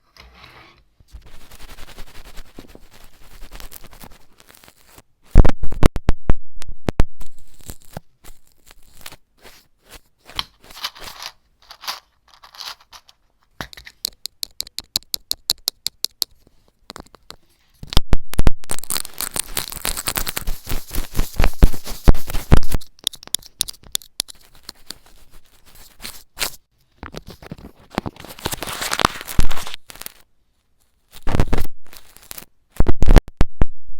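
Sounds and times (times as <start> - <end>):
scratching and scraping: 0.1 - 5.9, 7.2 - 18.0, 18.7 - 33.2
dense scratching and crinkling: 0.3 - 5.6, 7.2 - 13.4, 18.7 - 33.0.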